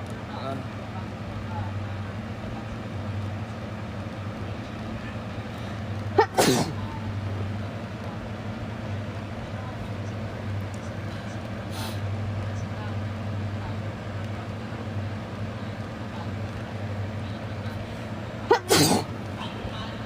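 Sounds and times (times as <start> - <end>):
person sneezing: 6.2 - 6.8, 18.5 - 19.1.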